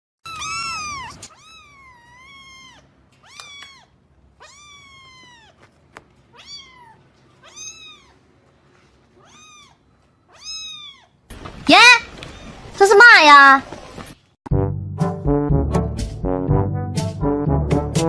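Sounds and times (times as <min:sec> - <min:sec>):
cat meowing: 0:00.2 - 0:05.6, 0:06.3 - 0:08.3, 0:09.2 - 0:11.2.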